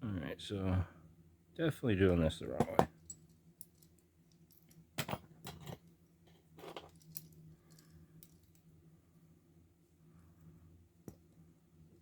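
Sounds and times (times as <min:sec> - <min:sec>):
metallic clicks of padlock parts: 0:06.8 - 0:08.7.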